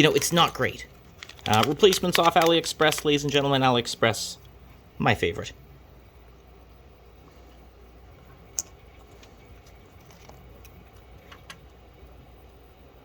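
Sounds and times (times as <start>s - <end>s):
faint room hum: 0.0s - 13.0s
small parts and tools clicking: 0.1s - 3.5s.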